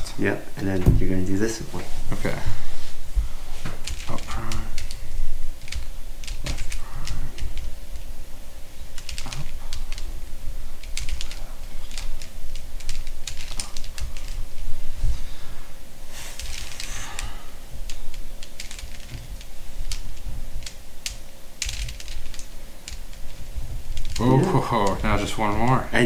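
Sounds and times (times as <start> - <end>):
plastic puzzle cube clicking: 3.8 - 5.0, 5.6 - 7.7, 8.9 - 10.1, 10.8 - 14.4, 16.4 - 19.2, 19.8 - 23.2, 23.9 - 25.0.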